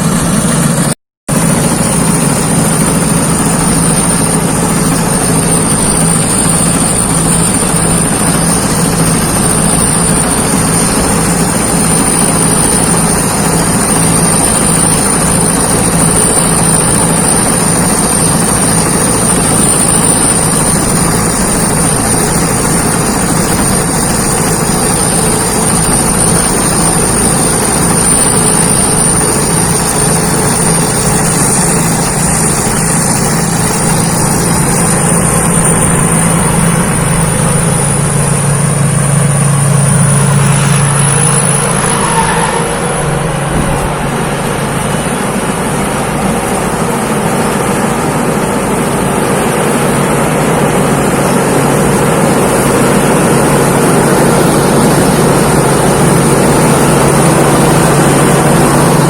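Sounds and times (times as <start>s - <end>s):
combine harvester drone: 0.0s - 59.0s
high-pitched whine: 0.0s - 59.0s.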